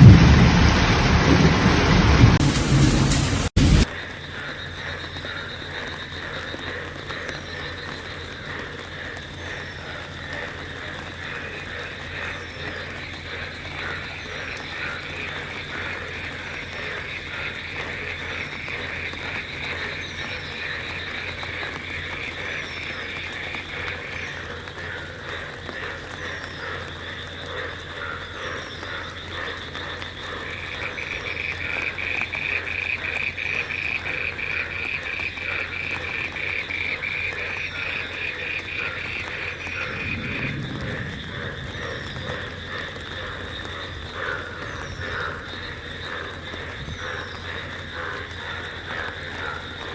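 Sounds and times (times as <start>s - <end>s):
frogs croaking: 3.8s - 49.9s.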